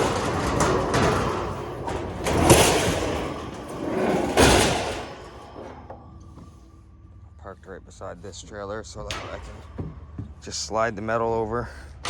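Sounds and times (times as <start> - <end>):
metal box clunks: 0.0 - 6.6, 9.0 - 10.5
metal box scraping across trailer: 0.0 - 6.9.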